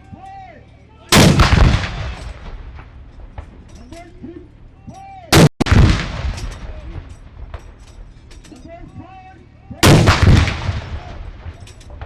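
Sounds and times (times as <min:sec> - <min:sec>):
cannon blast: 0:01.1 - 0:03.0, 0:05.4 - 0:07.6, 0:09.8 - 0:12.0
cannon blast rumble: 0:01.2 - 0:03.6, 0:05.4 - 0:07.8, 0:09.8 - 0:12.0.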